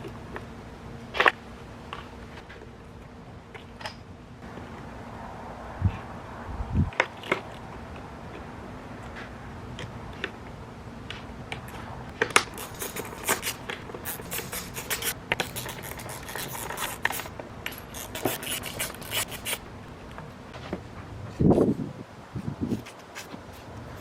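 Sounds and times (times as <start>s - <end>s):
tools clicking and scraping on metal: 11.5s - 20.3s.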